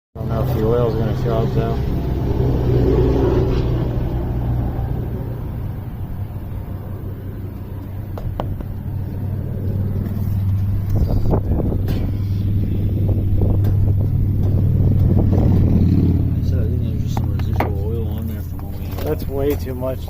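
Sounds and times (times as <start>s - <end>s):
car engine running: 0.2s - 20.0s.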